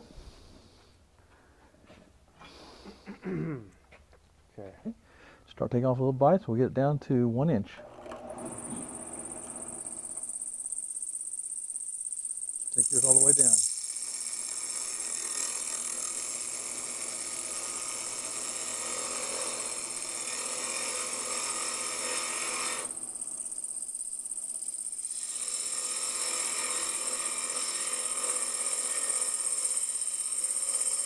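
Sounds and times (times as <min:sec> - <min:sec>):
tool cutting spinning wood: 0:07.8 - 0:31.0
wood lathe whining: 0:07.8 - 0:31.0.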